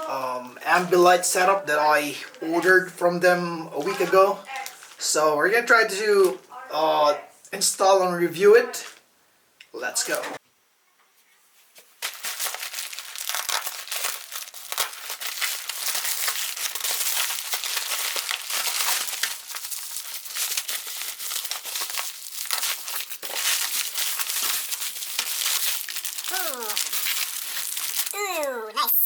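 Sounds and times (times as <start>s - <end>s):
wrapping crinkling and tearing: 3.8s - 5.1s, 11.8s - 28.7s.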